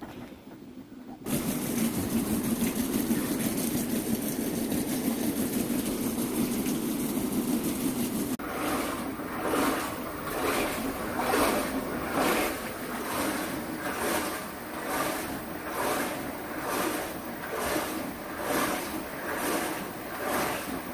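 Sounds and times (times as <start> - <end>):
water sloshing in washing machine: 0.0 - 20.9.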